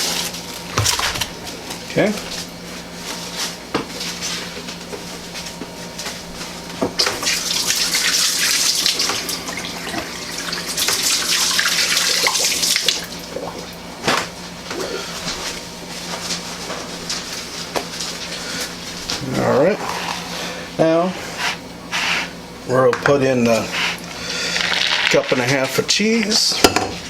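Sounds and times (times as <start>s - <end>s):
kitchen tap running: 0.7s - 1.4s, 7.0s - 13.7s.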